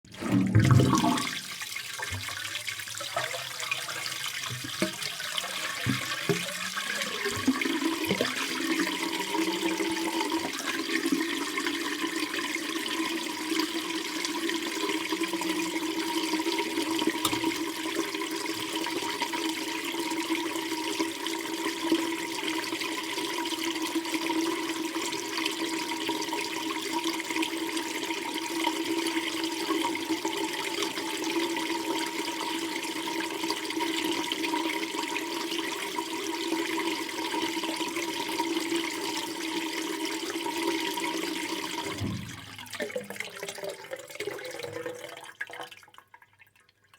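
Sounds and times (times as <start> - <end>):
bath water draining: 0.0 - 46.9
knocks: 41.9 - 42.5.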